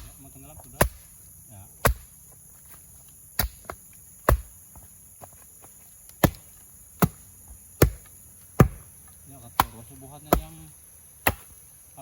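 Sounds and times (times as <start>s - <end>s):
insects droning: 0.0s - 12.0s
heavy blows on wood: 6.2s - 9.0s.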